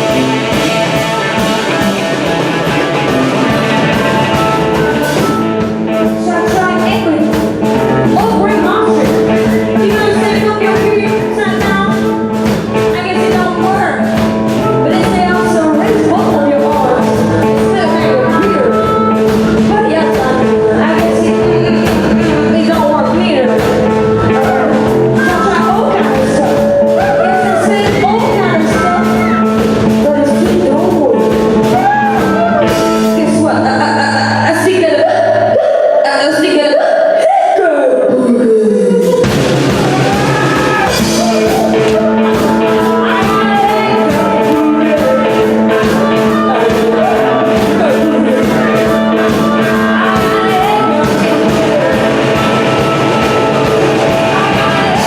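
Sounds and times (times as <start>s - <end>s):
drum kit beat: 0.0s - 34.7s, 38.8s - 55.0s
blues-rock band playing live: 0.0s - 35.6s, 38.8s - 55.0s
electric guitar: 0.0s - 55.0s.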